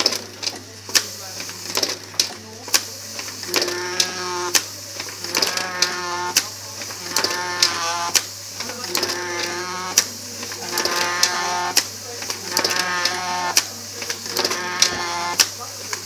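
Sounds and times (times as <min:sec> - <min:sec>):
sharp mechanical clicks: 0:00.0 - 0:16.0
steady machine hum: 0:00.0 - 0:16.0
printing machine squeal: 0:03.4 - 0:16.0.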